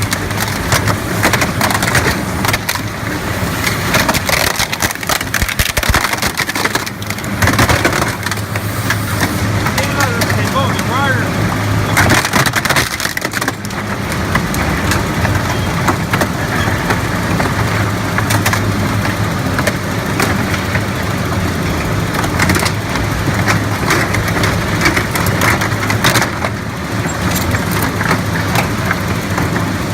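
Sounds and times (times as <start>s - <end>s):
plastic cracking and snapping: 3.9s - 8.4s, 12.0s - 13.8s.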